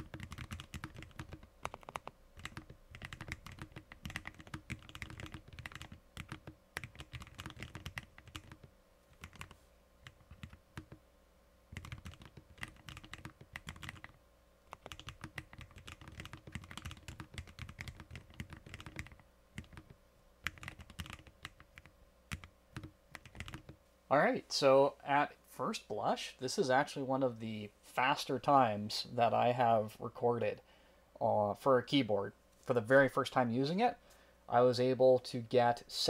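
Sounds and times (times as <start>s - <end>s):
mechanical keyboard typing: 0.0s - 11.0s, 11.7s - 23.8s.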